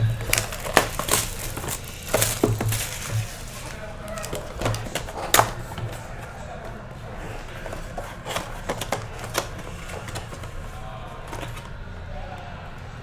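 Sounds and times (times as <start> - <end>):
box clicks: 0.0 - 6.2, 7.4 - 11.7
plastic wrapping crinkling: 0.0 - 11.9.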